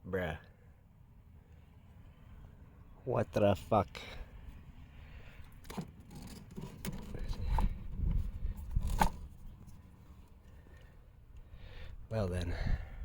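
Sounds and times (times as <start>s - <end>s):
tools clicking and scraping: 5.5s - 9.8s.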